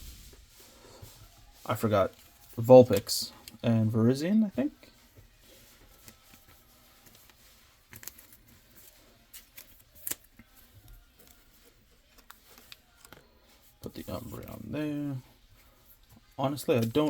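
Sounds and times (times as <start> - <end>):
trading cards rustling and clicking: 1.7 - 3.7, 5.7 - 14.6, 16.1 - 17.0.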